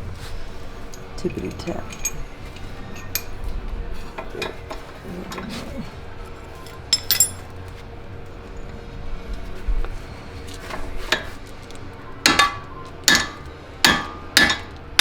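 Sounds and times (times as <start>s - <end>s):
hammer striking metal: 12.2s - 15.0s.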